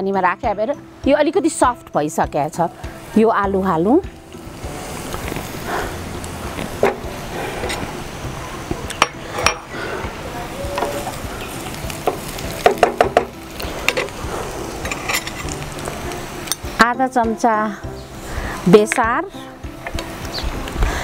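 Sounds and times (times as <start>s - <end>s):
food sizzling in a pan: 0.0s - 21.0s
spoon knocking and scraping pan: 12.0s - 14.1s, 14.8s - 15.6s.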